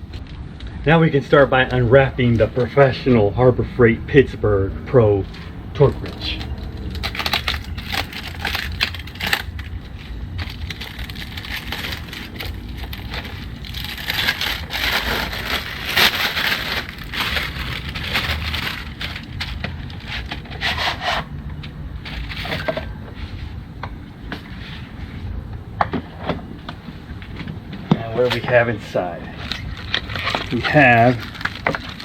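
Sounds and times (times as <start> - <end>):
packaging crinkling and tearing: 5.9 - 20.7, 29.3 - 32.0.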